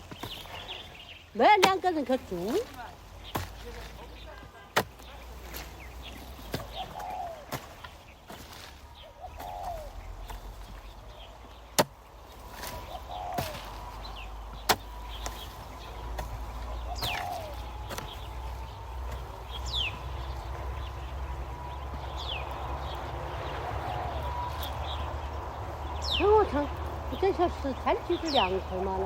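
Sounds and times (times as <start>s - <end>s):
short falling bird calls: 2.4s - 25.3s.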